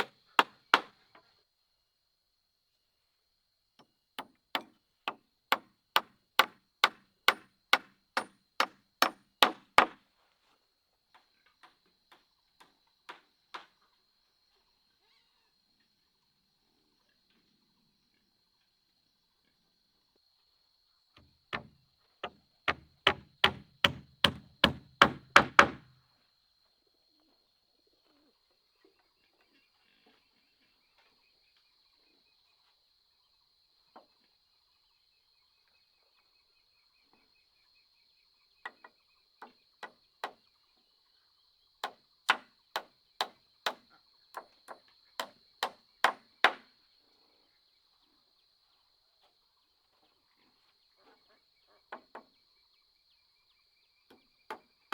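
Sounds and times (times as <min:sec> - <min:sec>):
hand tool chopping strikes: 0:21.6 - 0:25.8.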